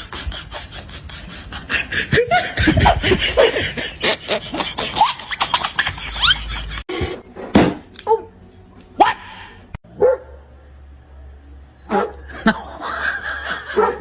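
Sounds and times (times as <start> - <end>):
people laughing and snickering: 0.0 - 7.2, 12.2 - 14.0.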